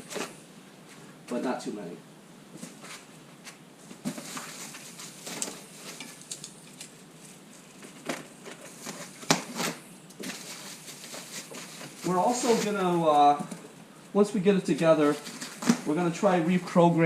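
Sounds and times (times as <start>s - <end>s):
parts and packaging handled: 2.6s - 13.8s, 14.7s - 16.0s.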